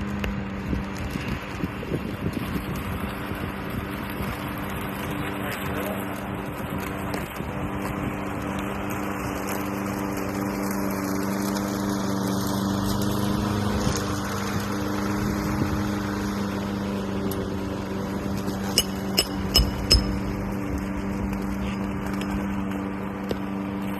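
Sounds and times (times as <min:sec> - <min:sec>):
engine humming: 0:00.0 - 0:23.9
sharp knocks: 0:18.8 - 0:20.2.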